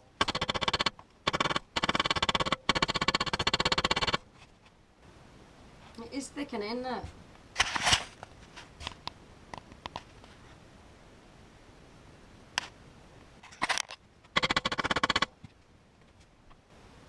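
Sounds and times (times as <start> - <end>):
fast ticking rattle: 0.2 - 4.2, 14.4 - 15.4.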